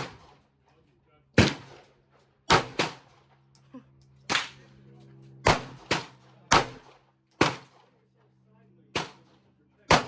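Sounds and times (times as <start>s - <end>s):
handgun shots: 2.5s - 3.0s, 5.5s - 7.8s.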